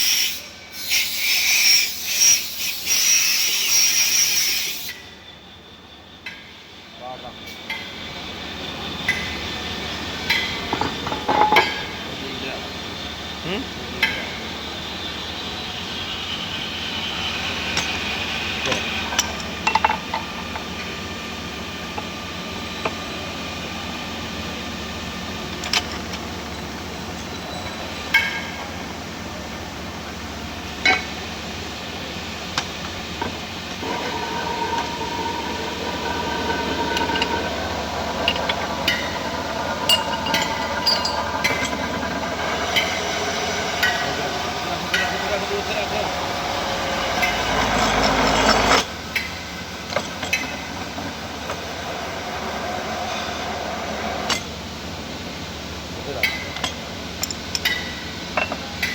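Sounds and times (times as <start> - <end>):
machine tool humming: 30.5 - 54.6
high metal cutting tone: 33.1 - 48.9.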